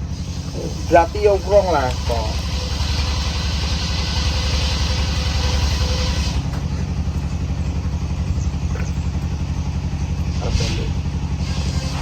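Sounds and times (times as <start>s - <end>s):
engine running steadily: 0.0s - 12.0s
hiss: 10.3s - 12.0s.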